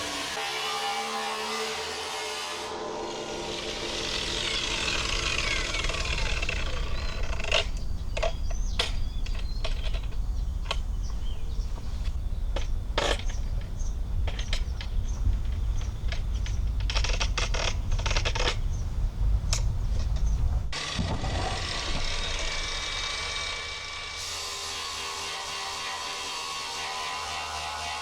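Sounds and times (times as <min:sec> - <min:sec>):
strong low rumble: 0:17.8 - 0:22.5.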